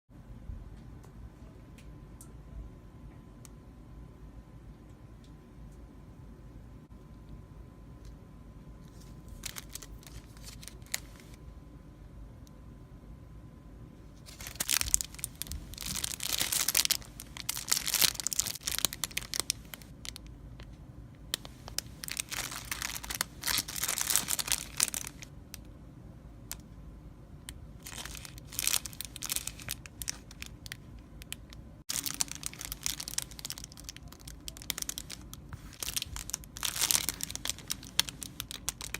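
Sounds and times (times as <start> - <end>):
packaging crinkling and tearing: 8.9 - 11.4, 14.2 - 20.3, 21.3 - 25.3, 27.8 - 38.9.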